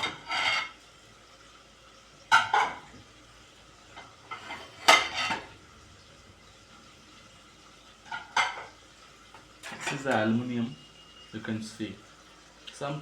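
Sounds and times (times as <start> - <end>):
dishes and utensils clattering: 0.0 - 0.8, 2.2 - 3.0, 3.9 - 5.6, 8.0 - 10.4.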